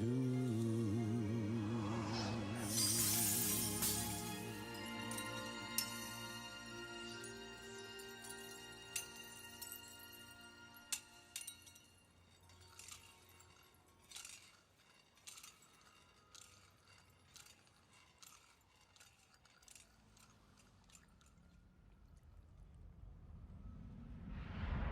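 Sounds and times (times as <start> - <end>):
low rumble: 0.0 - 3.9, 22.4 - 24.9
faint high clinking strikes: 2.6 - 21.6.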